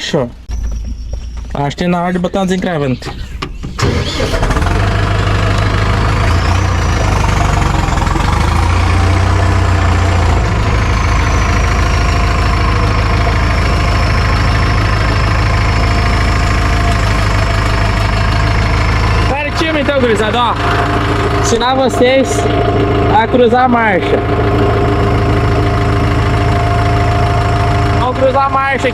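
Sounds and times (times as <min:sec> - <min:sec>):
tractor diesel engine running: 0:00.0 - 0:28.9
high engine whine: 0:00.5 - 0:28.9.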